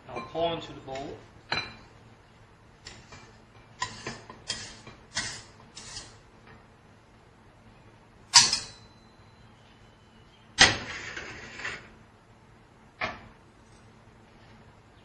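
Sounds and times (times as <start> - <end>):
cookware scraping: 2.9 - 6.2
sharp metal clank with ring: 8.3 - 9.4.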